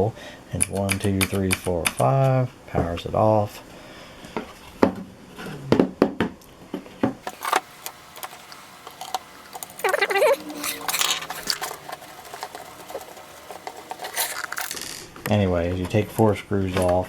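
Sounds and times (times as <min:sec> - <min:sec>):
wavering squeak: 0:09.8 - 0:14.8.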